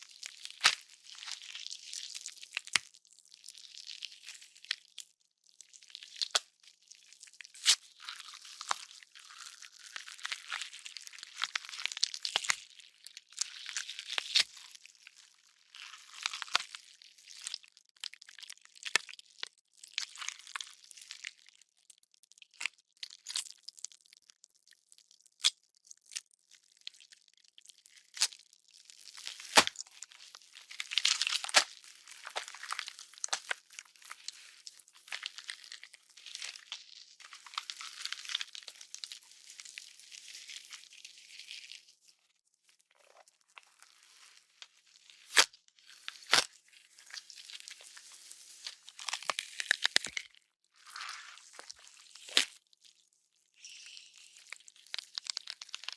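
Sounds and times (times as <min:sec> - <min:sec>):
wet flesh tearing and squishing: 0:00.1 - 0:21.6, 0:22.4 - 0:24.2, 0:24.9 - 0:42.0, 0:42.8 - 0:53.4, 0:54.1 - 0:55.9
sharp bone cracks: 0:29.4 - 0:29.8, 0:31.0 - 0:33.6, 0:45.3 - 0:46.5.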